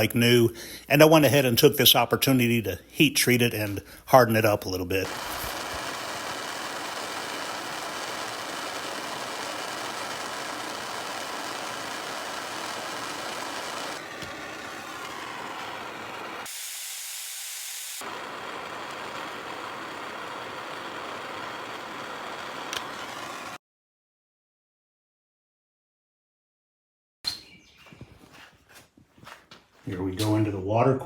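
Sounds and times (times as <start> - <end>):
gas burner flame hissing: 4.3 - 23.6.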